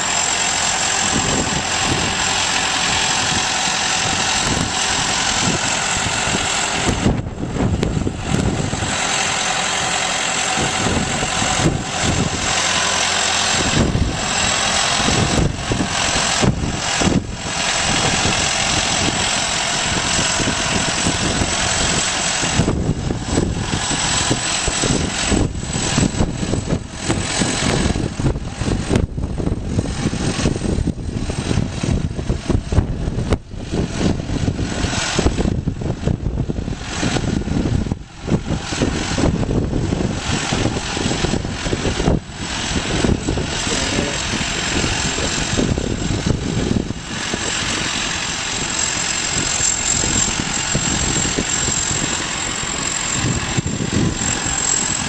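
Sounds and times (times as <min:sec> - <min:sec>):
diesel engine running: 0:00.0 - 0:55.0
thin high whine: 0:00.0 - 0:55.0.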